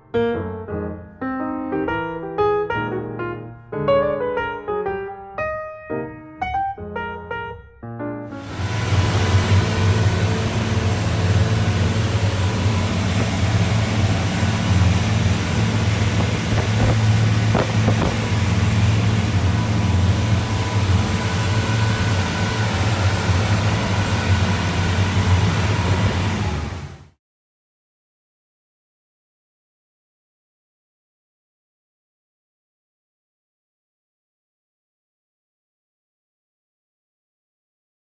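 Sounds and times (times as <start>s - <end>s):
water rushing: 8.3s - 27.0s
boat engine hum: 8.3s - 27.2s.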